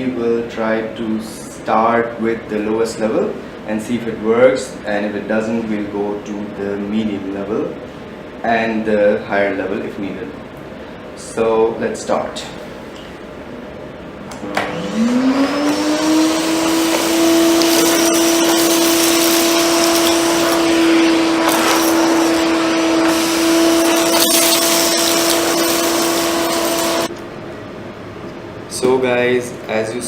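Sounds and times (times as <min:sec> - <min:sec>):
vacuum cleaner running: 0:14.2 - 0:27.1.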